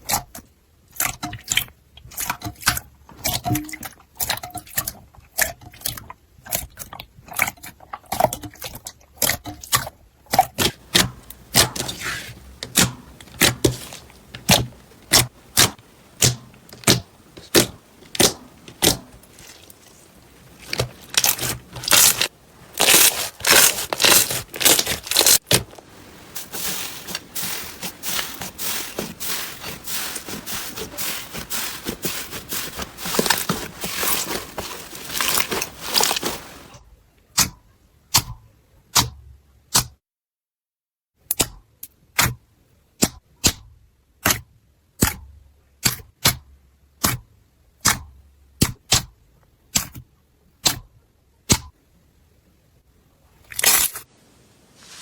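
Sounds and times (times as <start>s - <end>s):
slime squeezed with sticky pops: 1.0s - 34.3s, 49.7s - 50.0s.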